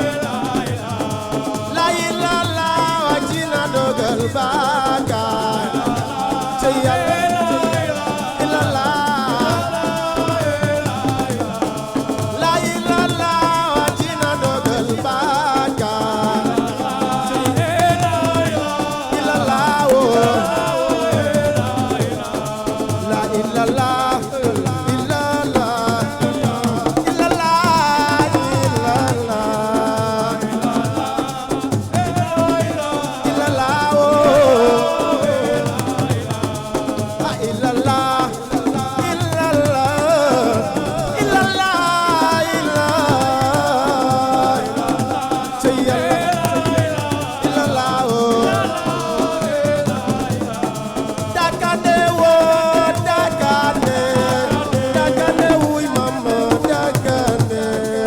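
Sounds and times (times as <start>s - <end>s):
dense fast percussion: 0.0s - 58.0s
shaker: 0.0s - 58.0s
person singing melody: 19.2s - 21.6s, 34.0s - 36.1s.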